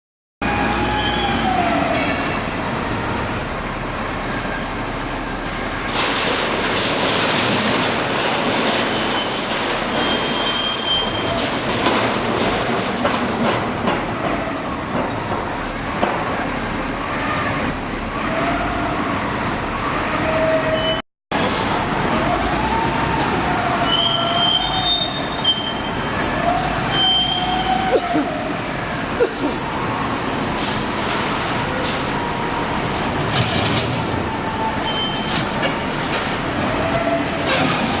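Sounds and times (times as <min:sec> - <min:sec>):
metal squeals: 0:08.8 - 0:11.6, 0:20.1 - 0:21.0, 0:23.7 - 0:26.2, 0:26.8 - 0:28.2, 0:34.3 - 0:35.5.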